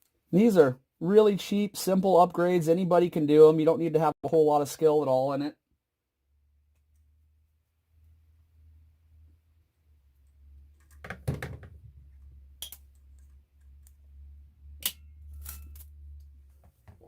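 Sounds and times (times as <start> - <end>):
clicks of small parts handled: 12.6 - 14.0, 14.8 - 16.4.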